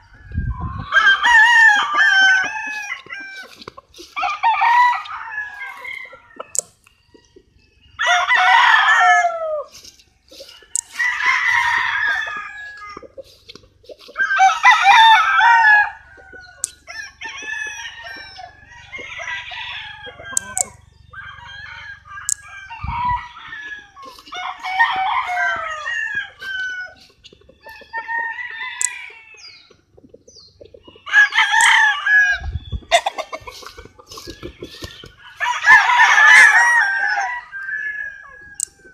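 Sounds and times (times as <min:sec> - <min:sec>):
roosters crowing: 0:00.0 - 0:38.9.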